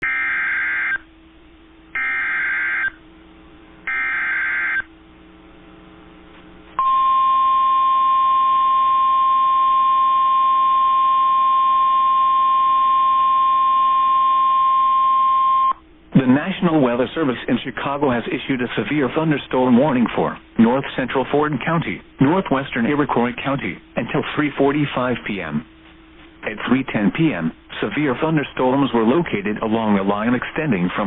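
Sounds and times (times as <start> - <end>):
loud steady warning beep: 0.0 - 1.1, 2.0 - 3.0, 3.9 - 4.9, 6.8 - 15.8.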